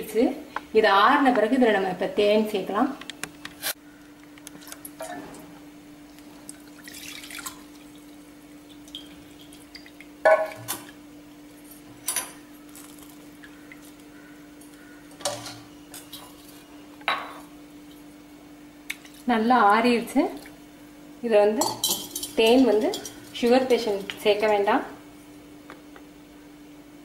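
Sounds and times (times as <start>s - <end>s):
liquid pouring: 6.4s - 10.6s
spoon clinking vessels: 21.6s - 23.8s.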